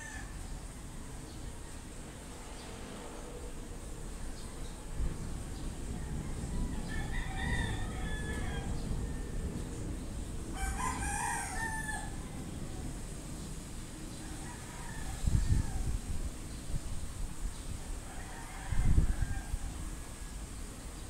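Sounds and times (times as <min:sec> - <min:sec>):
roosters crowing: 0:00.0 - 0:00.8, 0:05.6 - 0:09.8, 0:10.5 - 0:13.0, 0:14.1 - 0:16.1, 0:17.8 - 0:20.3
low rushing noise: 0:00.0 - 0:14.5.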